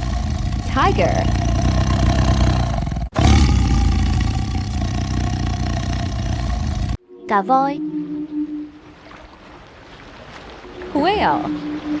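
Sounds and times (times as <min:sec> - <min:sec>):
tiger roaring: 0:00.0 - 0:07.0.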